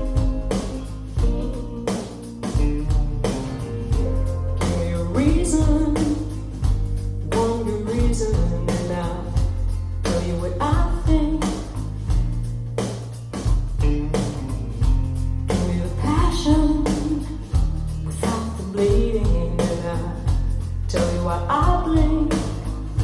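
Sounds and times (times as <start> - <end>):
pop-rock song over speakers: 0.0 - 23.0
woman singing: 4.6 - 6.6, 7.2 - 9.5, 10.1 - 11.8, 15.5 - 23.0.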